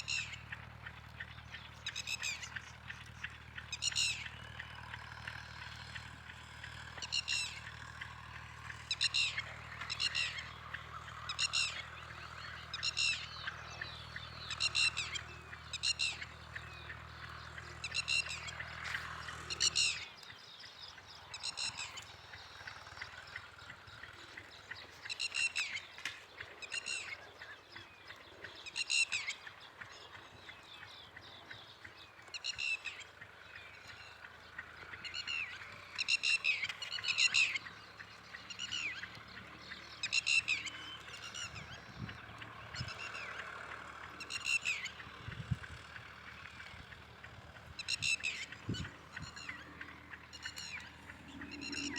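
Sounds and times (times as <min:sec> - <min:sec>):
high-pitched animal calls: 0:47.8 - 0:51.9.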